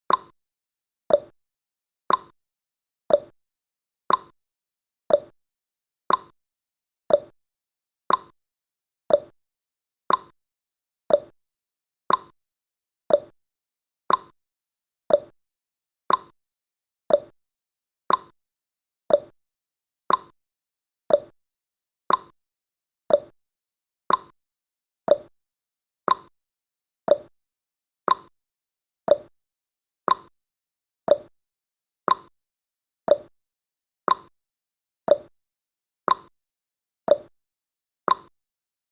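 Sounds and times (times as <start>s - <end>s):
sharp clock ticks: 0.1s - 0.3s, 2.1s - 2.3s, 3.1s - 3.3s, 4.1s - 4.3s, 5.1s - 5.3s, 6.1s - 6.3s, 7.1s - 7.3s, 8.1s - 8.3s, 9.1s - 9.3s, 10.1s - 10.3s, 11.1s - 11.3s, 12.1s - 12.3s, 13.1s - 13.3s, 14.1s - 14.3s, 15.1s - 15.3s, 16.1s - 16.3s, 17.1s - 17.3s, 18.1s - 18.3s, 19.1s - 19.3s, 20.1s - 20.3s, 21.1s - 21.3s, 22.1s - 22.3s, 23.1s - 23.3s, 24.1s - 24.3s, 25.1s - 25.3s, 26.1s - 26.3s, 27.1s - 27.3s, 28.1s - 28.3s, 29.1s - 29.3s, 30.1s - 30.3s, 31.1s - 31.3s, 32.1s - 32.3s, 33.1s - 33.3s, 34.1s - 34.3s, 35.1s - 35.3s, 36.1s - 36.3s, 37.1s - 37.3s, 38.1s - 38.3s.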